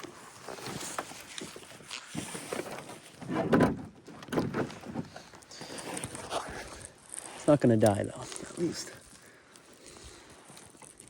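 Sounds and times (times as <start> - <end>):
knocks and handling in boat: 0.4 - 5.4.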